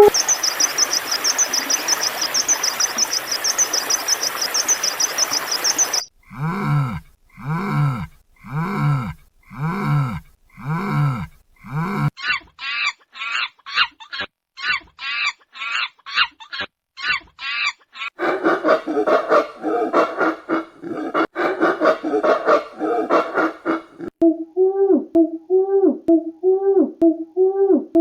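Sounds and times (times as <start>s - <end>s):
poultry calling: 0.0s - 6.1s, 18.2s - 24.1s.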